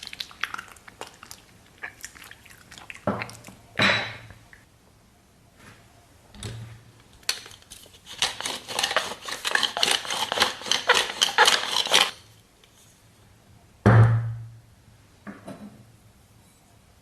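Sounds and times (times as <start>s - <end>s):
crisp eating clicks and crackles: 0.0s - 3.6s.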